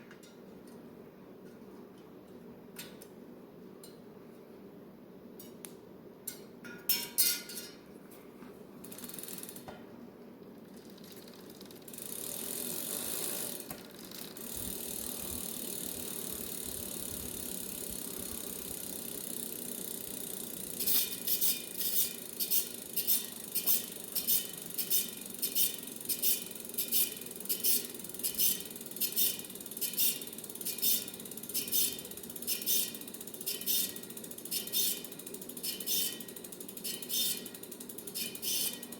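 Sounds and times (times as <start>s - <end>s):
bicycle wheel whirring: 8.8s - 9.7s, 10.5s - 38.9s.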